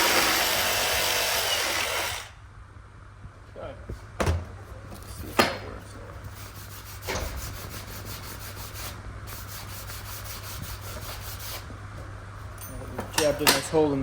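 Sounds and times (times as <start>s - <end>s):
steady low hum: 1.9s - 14.0s
rubbing and scraping on material: 6.0s - 12.6s.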